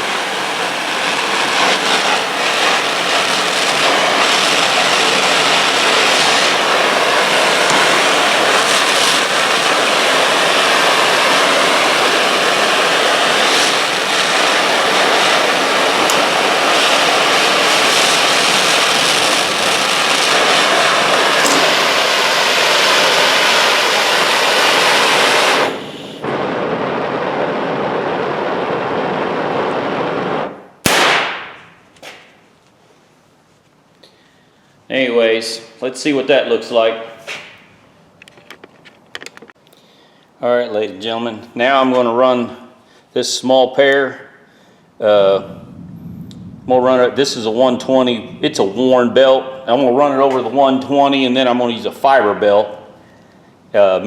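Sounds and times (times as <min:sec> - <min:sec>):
gas torch hissing: 0:00.0 - 0:26.6, 0:44.6 - 0:54.0.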